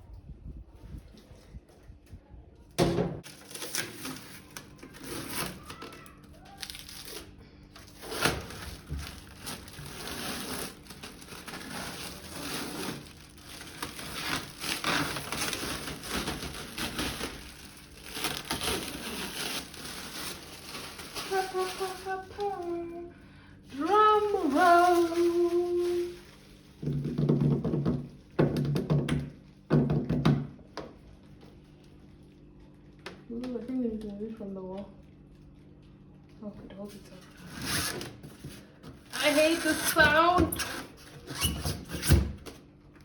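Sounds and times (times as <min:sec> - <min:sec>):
plastic packaging crinkling: 0:03.2 - 0:27.0.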